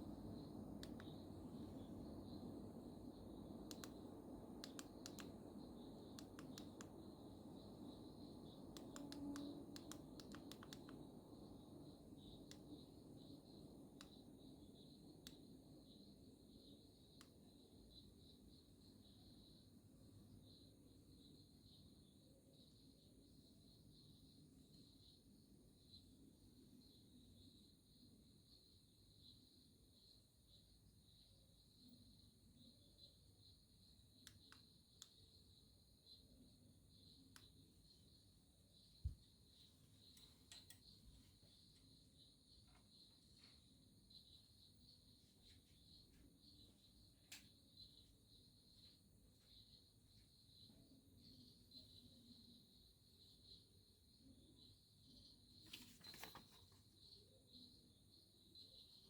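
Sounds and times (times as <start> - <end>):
low background hiss: 0.0 - 59.0
faint short clicks: 3.7 - 4.0, 4.6 - 5.4, 8.7 - 11.0.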